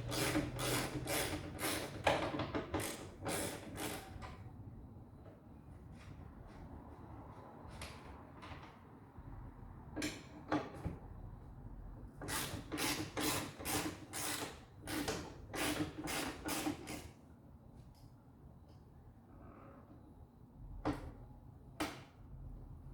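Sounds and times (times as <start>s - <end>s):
ratchet wrench clicking: 2.8s - 4.0s.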